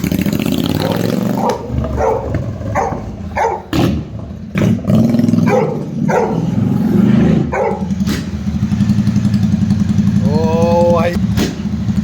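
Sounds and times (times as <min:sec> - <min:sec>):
motorcycle engine idling: 0:00.0 - 0:06.6, 0:07.4 - 0:12.0
dog barking: 0:00.8 - 0:03.8, 0:05.4 - 0:06.8, 0:07.5 - 0:08.0.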